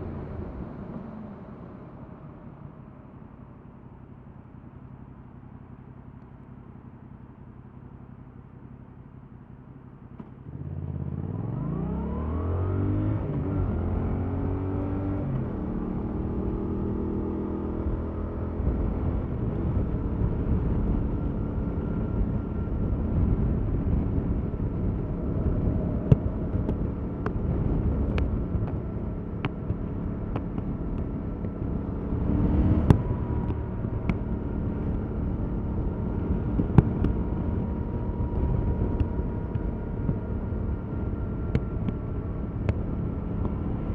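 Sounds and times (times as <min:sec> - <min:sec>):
wind and road noise: 0:00.0 - 0:43.9
motorcycle engine accelerating: 0:10.2 - 0:43.9.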